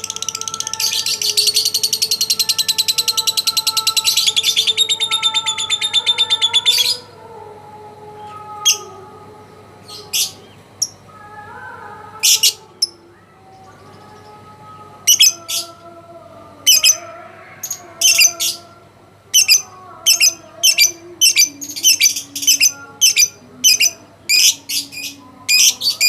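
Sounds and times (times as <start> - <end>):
lovebird chattering trill: 15.1 - 15.5, 16.7 - 17.0, 19.4 - 24.8.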